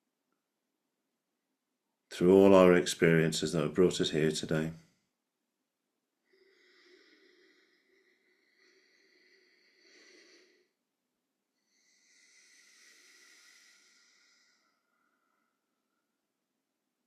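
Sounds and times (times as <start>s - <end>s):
faint breathing: 6.2s - 10.9s, 11.5s - 16.3s.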